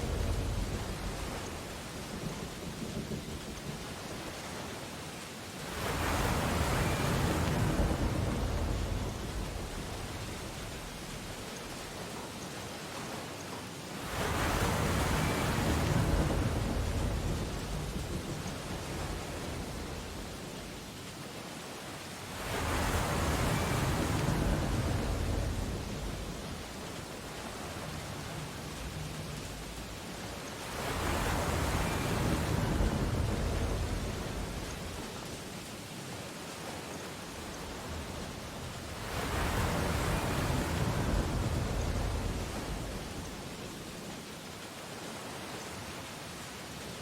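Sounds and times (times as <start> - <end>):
surf wash on beach: 0.0 - 47.0
ocean wave breaking: 5.6 - 12.0, 14.0 - 20.8, 22.2 - 35.7, 36.6 - 43.8.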